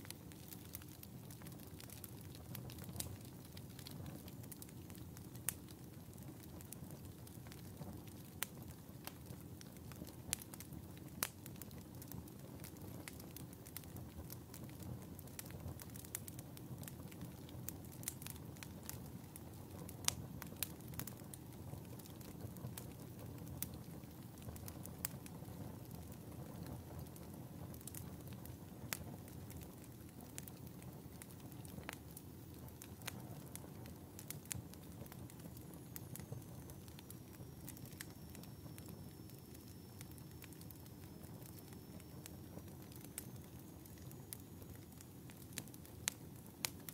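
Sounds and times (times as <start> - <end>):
fire crackling in a fireplace: 0.0 - 46.9
faint high whistle: 36.0 - 45.0.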